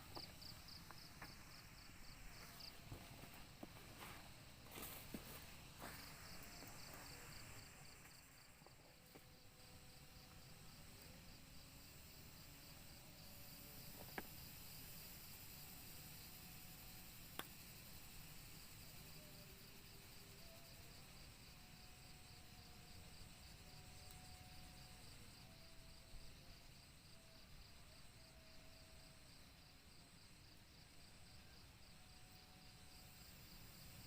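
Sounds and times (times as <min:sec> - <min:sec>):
pulsing high insect trill: 0:00.0 - 0:08.7
thin hiss of insects: 0:00.1 - 0:08.6.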